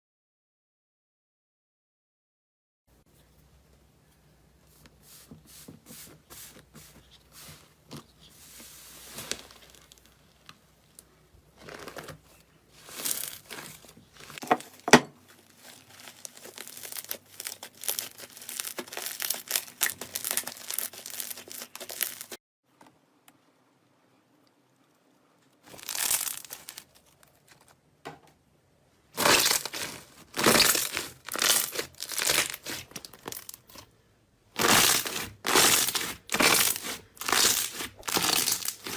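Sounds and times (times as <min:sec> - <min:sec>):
slime crackling when squeezed: 0:15.6 - 0:22.4, 0:29.2 - 0:33.6.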